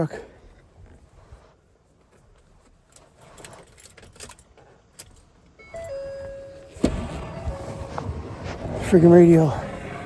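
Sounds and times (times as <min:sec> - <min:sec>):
keys jangling: 0:02.9 - 0:06.0
loud car radio: 0:06.7 - 0:10.0.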